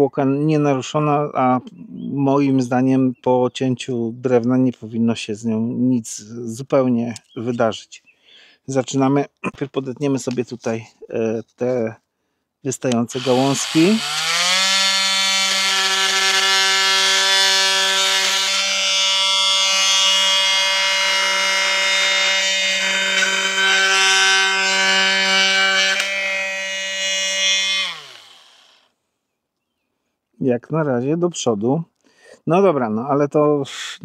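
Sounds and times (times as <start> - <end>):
oscillating multi-tool cutting wood: 13.1 - 28.9.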